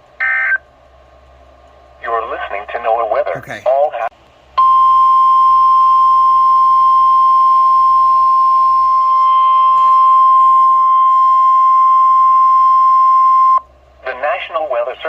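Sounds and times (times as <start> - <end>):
high-pitched warning tone: 4.6 - 13.6.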